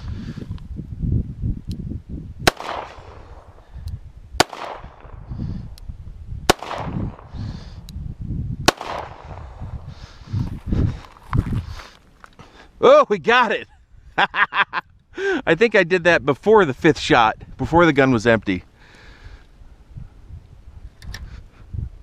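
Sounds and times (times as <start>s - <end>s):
revolver gunshots: 2.4s - 3.7s, 4.4s - 5.4s, 6.5s - 7.4s, 8.6s - 9.8s.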